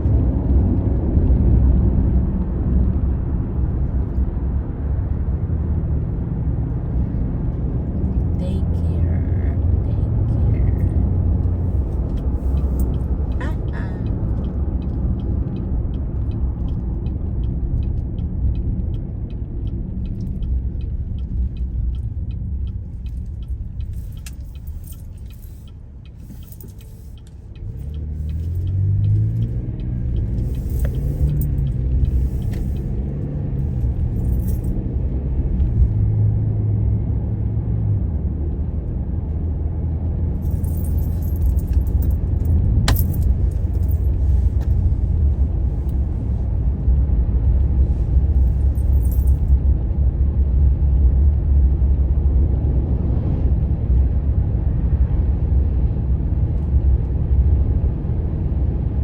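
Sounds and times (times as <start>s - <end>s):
car rumble inside cabin: 0.0s - 59.0s
car engine accelerating: 2.9s - 49.5s
light regular ticking: 10.8s - 34.7s, 40.4s - 44.5s, 48.4s - 49.4s.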